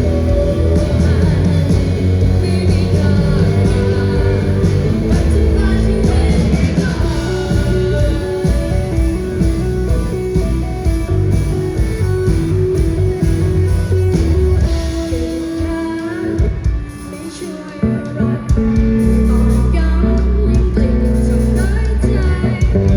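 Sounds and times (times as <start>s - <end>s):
person singing: 0.0s - 10.3s, 14.6s - 22.9s
steady drum beat: 0.0s - 17.5s
electric guitar: 0.0s - 22.9s.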